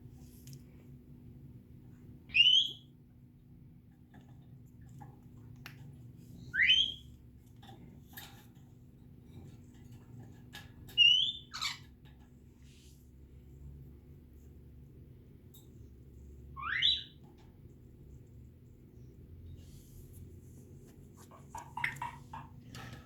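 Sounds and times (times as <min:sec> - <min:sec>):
parrot squeak: 0:06.5 - 0:07.0, 0:11.0 - 0:11.9, 0:16.6 - 0:17.2
parrot whistling: 0:06.5 - 0:07.0, 0:16.6 - 0:17.2.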